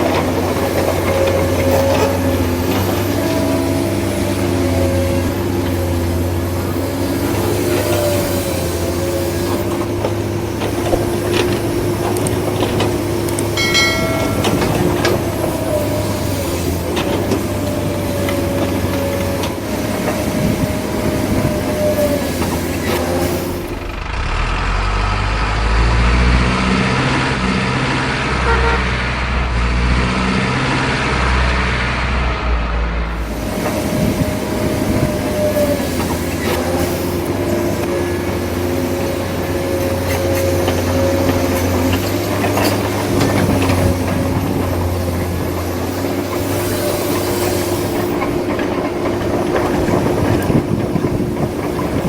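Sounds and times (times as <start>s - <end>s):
heavy truck engine running: 0.0s - 52.0s
truck horn toot: 28.4s - 29.1s.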